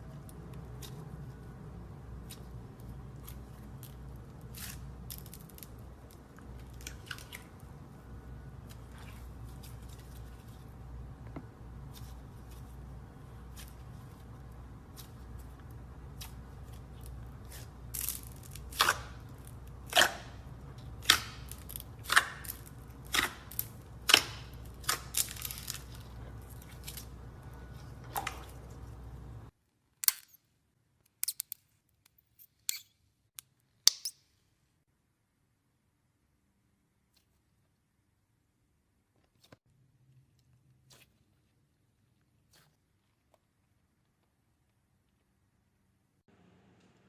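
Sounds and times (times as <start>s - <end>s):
low steady hum: 0.0s - 29.6s.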